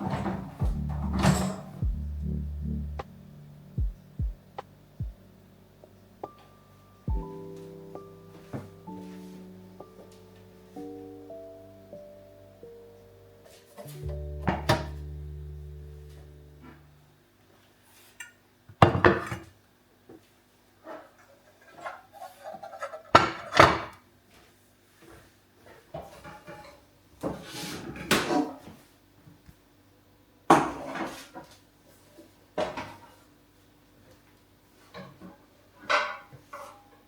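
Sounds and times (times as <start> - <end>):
dishes clinking and knocking: 0.0 - 1.7.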